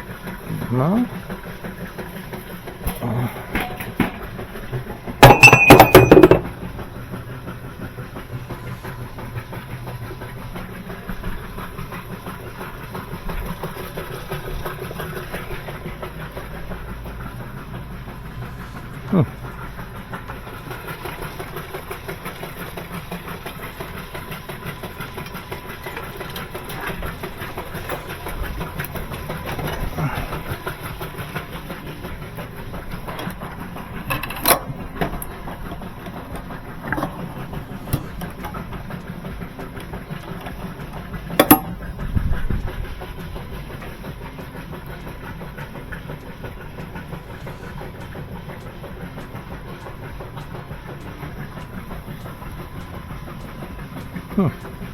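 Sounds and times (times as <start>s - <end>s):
machine clattering: 1.3s - 7.2s, 19.4s - 54.9s
sharp metallic clanks: 5.2s - 6.6s, 41.3s - 41.9s.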